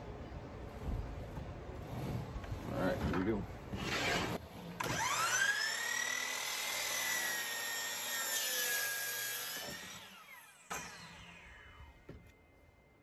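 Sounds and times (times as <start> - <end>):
saw cutting wood board: 1.8 - 12.2
miter saw whining: 3.8 - 12.2.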